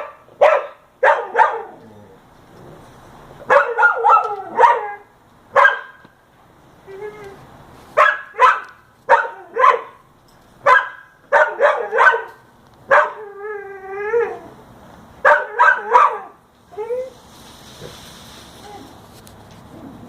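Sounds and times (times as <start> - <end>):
dog barking: 0.0 - 1.8, 3.5 - 6.0, 8.0 - 10.0, 10.6 - 13.2, 15.2 - 16.4.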